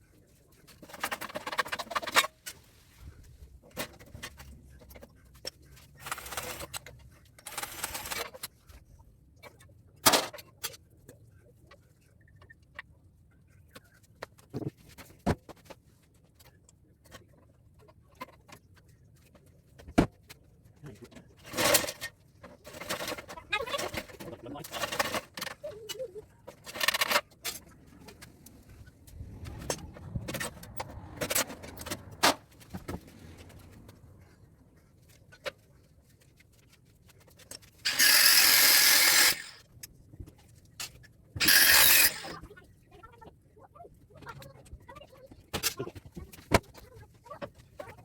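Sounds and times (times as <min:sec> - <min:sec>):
parts clicking and rattling: 0:00.7 - 0:02.7, 0:21.0 - 0:34.0, 0:35.0 - 0:42.4
loud rasping noise: 0:37.9 - 0:39.6, 0:41.4 - 0:42.4.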